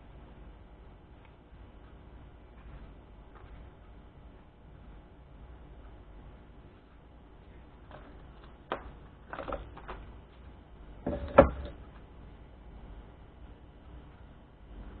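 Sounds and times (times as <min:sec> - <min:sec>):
small clicks and knocks: 0:07.8 - 0:12.1.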